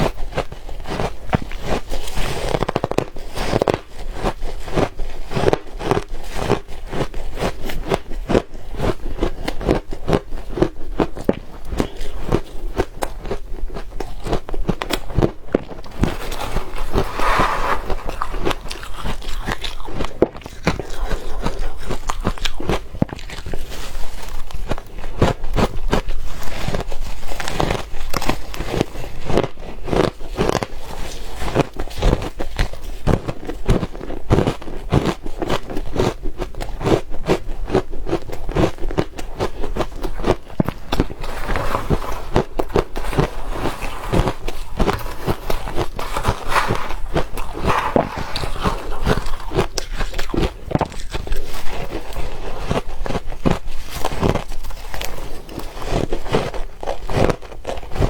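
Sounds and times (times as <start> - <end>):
ice being chewed: 0.0 - 58.0.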